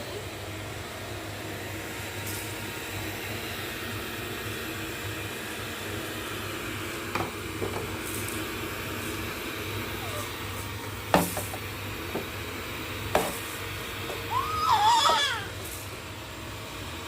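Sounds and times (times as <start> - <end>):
robotic vacuum cleaner whirring: 5.9 - 16.2.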